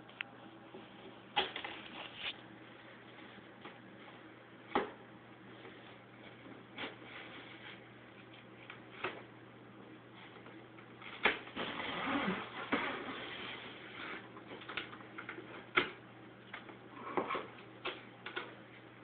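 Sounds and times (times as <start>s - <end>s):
packaging rustling and scraping: 1.4s - 2.4s.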